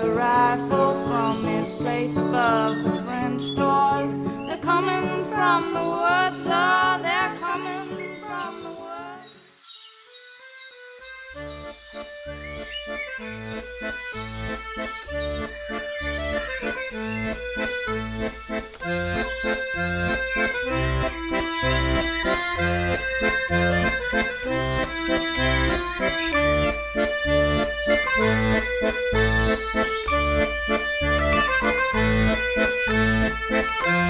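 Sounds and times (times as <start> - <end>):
held reedy chords: 10.8 - 34.0.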